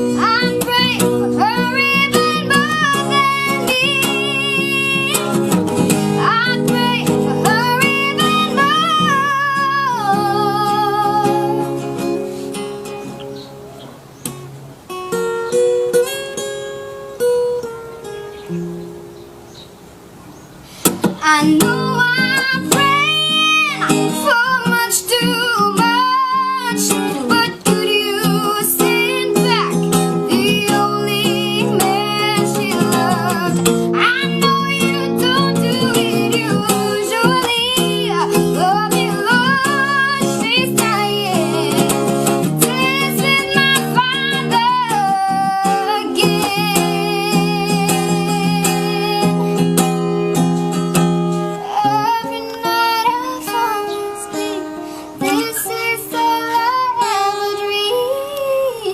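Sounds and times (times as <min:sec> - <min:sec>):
child singing: 0:00.0 - 0:05.4, 0:06.2 - 0:11.8, 0:21.1 - 0:49.7, 0:51.6 - 0:58.9
acoustic guitar: 0:00.0 - 0:58.9.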